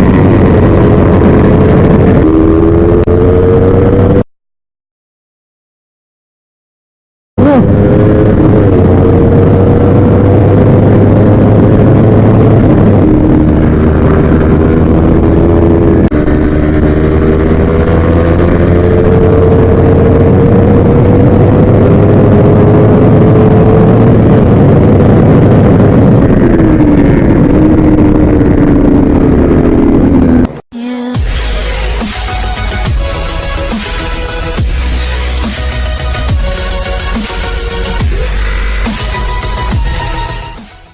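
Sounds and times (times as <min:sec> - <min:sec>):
motorcycle engine at high revs: 0:07.4 - 0:30.6.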